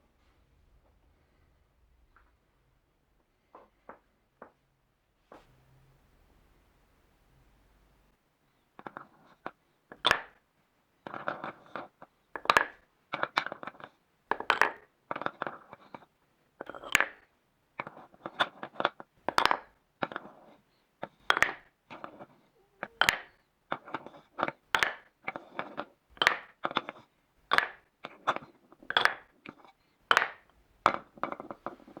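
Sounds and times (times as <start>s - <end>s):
wooden balls clattering down a run: 8.8s - 10.4s, 11.0s - 32.0s.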